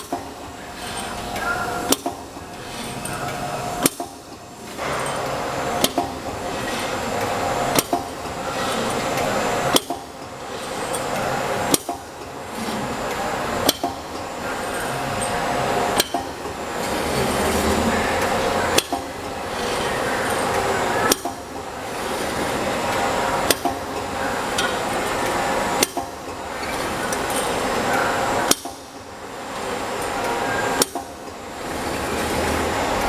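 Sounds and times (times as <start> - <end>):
machine punch stroke: 0.0 - 29.0
machine running hum: 0.0 - 33.0.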